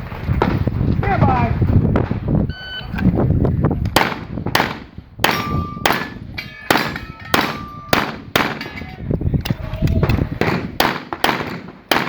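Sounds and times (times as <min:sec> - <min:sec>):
pistol shots: 0:04.0 - 0:08.7, 0:10.4 - 0:12.0
short metallic ring: 0:05.3 - 0:08.0.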